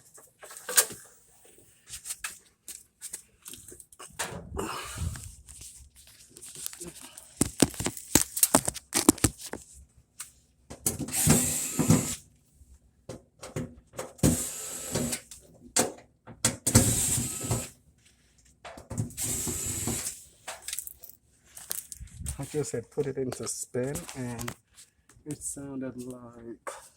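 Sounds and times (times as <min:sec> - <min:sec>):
power drill running: 0:11.1 - 0:12.2, 0:14.2 - 0:15.2, 0:16.7 - 0:17.7, 0:19.2 - 0:20.2.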